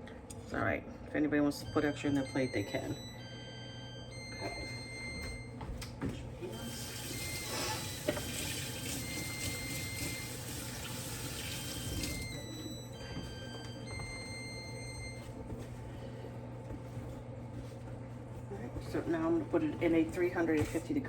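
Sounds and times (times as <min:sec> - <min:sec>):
tap running water into sink: 0:06.7 - 0:12.2.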